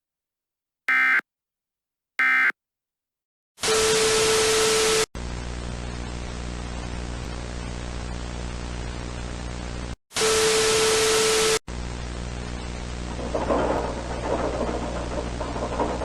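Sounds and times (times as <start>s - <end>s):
train rumble: 13.1s - 16.0s.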